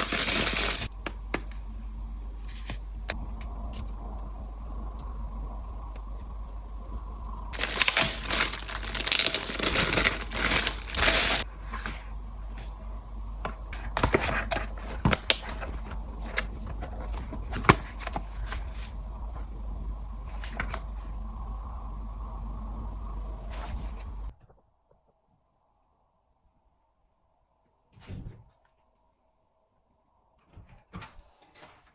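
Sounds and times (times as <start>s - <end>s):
packaging crinkled and torn: 0.0s - 0.9s, 7.6s - 11.4s.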